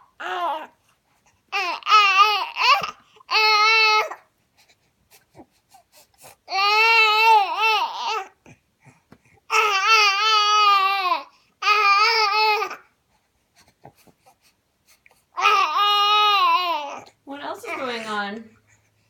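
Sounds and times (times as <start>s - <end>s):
baby boy wailing vocal sounds: 0.0s - 0.8s, 1.5s - 4.3s, 6.4s - 8.5s, 9.5s - 12.9s, 15.3s - 18.2s.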